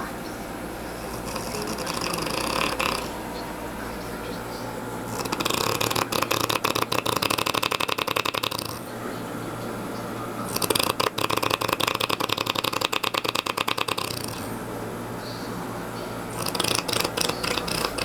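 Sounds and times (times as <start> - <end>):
rattling snore: 0.9 - 3.2, 4.9 - 9.0, 10.4 - 14.7, 16.2 - 18.0.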